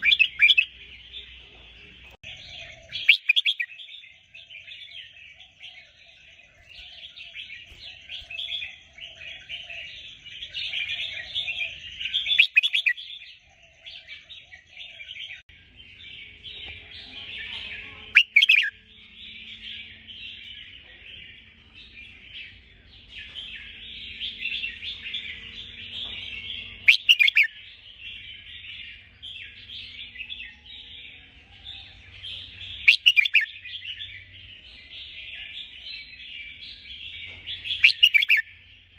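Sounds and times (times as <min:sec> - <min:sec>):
bird chirping chatter: 0:00.0 - 0:38.9
sharp loud bird call: 0:26.8 - 0:27.5, 0:32.9 - 0:33.5, 0:37.8 - 0:38.4.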